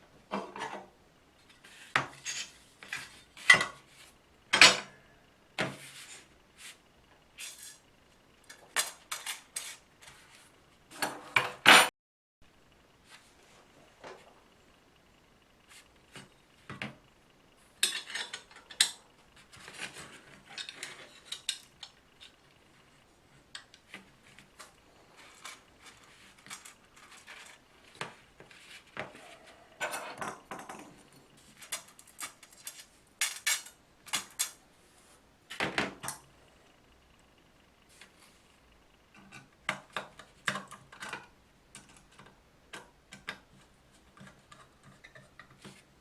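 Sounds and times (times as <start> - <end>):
metal parts clinking and rattling: 31.6 - 34.6.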